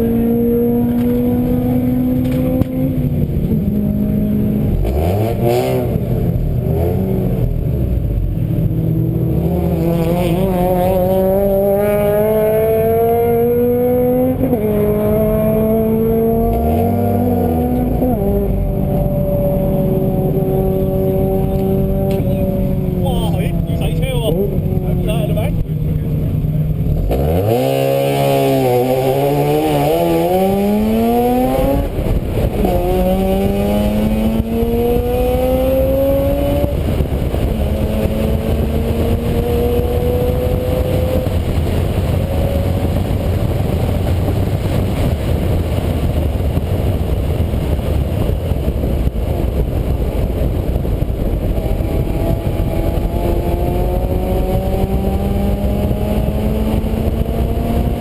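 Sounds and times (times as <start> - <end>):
vehicle engine accelerating: 0.0 - 58.0
dense rushing noise: 15.0 - 27.6, 28.4 - 58.0.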